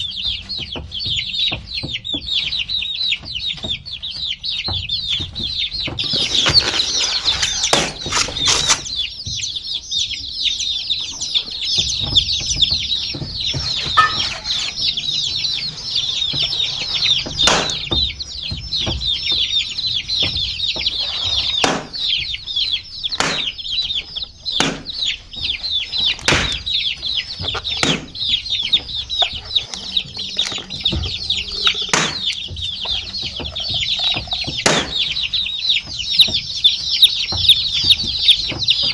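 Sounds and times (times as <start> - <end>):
baby chicks peeping: 0.0 - 38.9
sharp taps: 7.4 - 21.0, 23.0 - 38.9.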